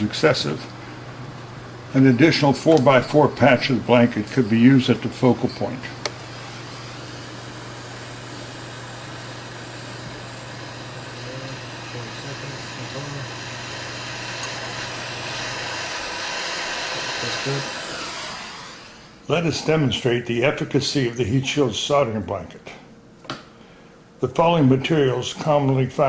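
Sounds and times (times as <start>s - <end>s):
low steady hum: 0.0s - 16.0s, 17.0s - 26.0s
torch flame hissing: 2.7s - 19.2s.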